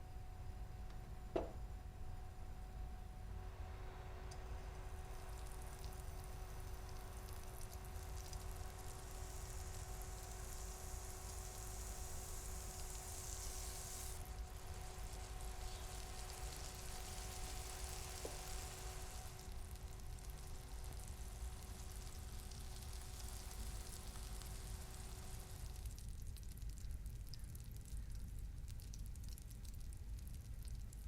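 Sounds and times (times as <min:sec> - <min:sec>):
faint steady hum: 0:00.0 - 0:31.0
food sizzling in hot oil: 0:04.4 - 0:26.7.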